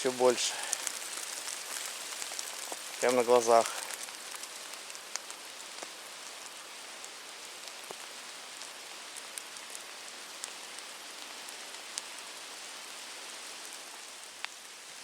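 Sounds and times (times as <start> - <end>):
raindrops ticking: 0.0 - 5.9
steady rain hiss: 0.0 - 15.0.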